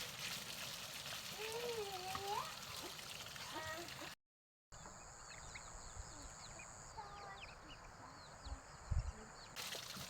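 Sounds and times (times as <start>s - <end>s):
birds chirping: 4.8s - 9.6s.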